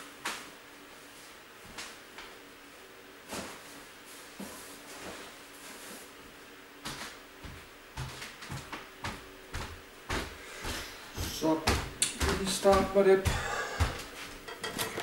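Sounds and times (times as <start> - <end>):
heavy thuds: 10.1 - 14.2.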